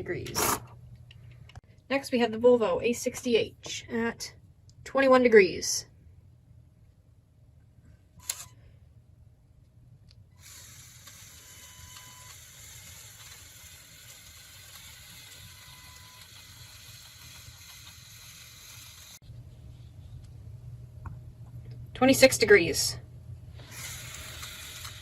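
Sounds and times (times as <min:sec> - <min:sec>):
toy electric motors whirring: 0:10.4 - 0:19.2, 0:23.6 - 0:25.0.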